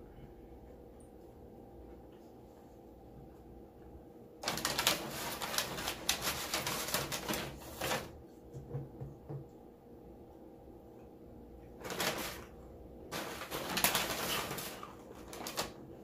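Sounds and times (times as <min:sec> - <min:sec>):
crisp food crackles and rustles: 0:04.4 - 0:08.2, 0:11.8 - 0:12.5, 0:13.1 - 0:16.0.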